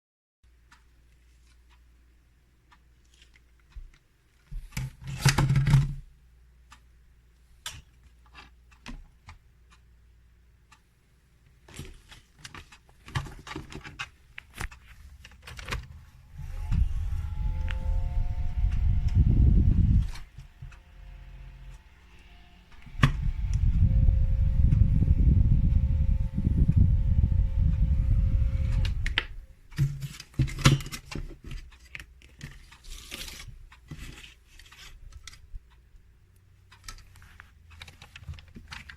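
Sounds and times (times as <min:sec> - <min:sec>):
low rumbling hum: 0:16.0 - 0:29.7.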